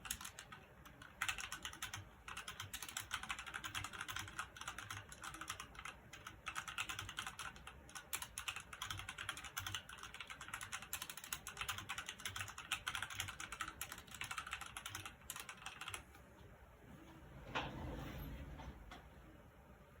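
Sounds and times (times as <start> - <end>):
mechanical keyboard typing: 0.0 - 16.2.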